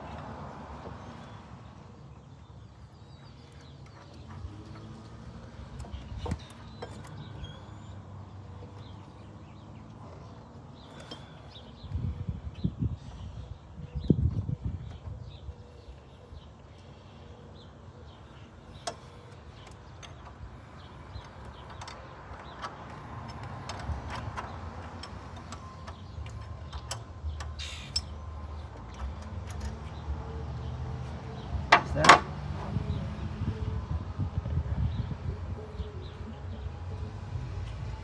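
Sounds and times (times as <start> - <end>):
hand tools clicking and clinking: 18.8 - 30.2.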